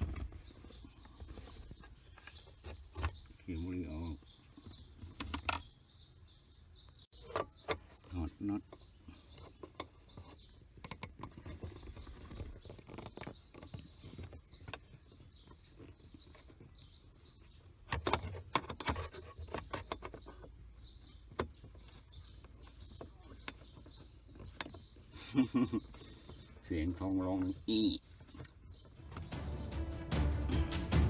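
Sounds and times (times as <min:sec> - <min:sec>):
birds chirping faintly: 0:00.0 - 0:31.0.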